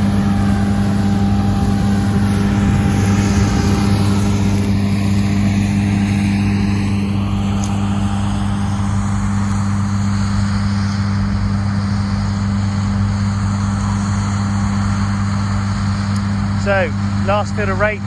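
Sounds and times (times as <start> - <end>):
combine harvester droning: 0.0 - 18.0.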